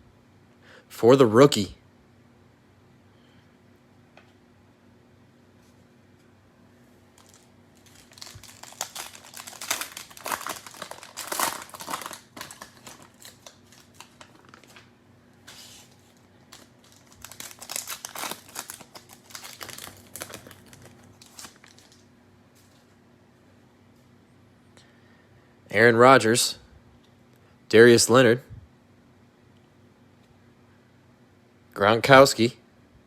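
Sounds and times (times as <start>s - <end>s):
plastic wrapper crinkling: 7.1s - 22.8s.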